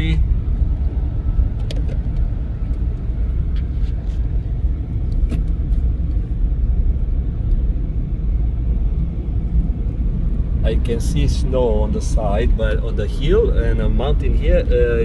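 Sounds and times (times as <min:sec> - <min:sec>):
road rumble inside car: 0:00.0 - 0:15.0.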